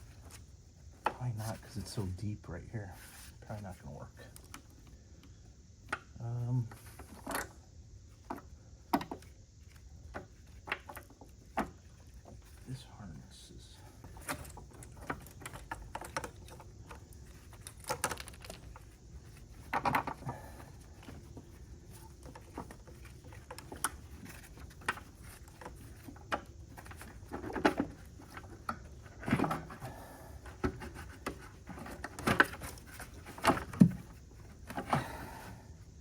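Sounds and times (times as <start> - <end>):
plastic part knocking and rattling: 19.5 - 20.2.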